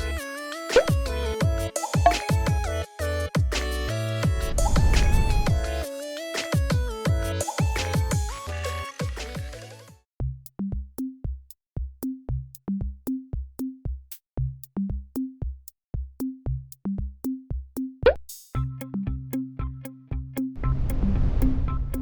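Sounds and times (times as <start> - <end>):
electronic music drum-machine beat: 0.0 - 9.8.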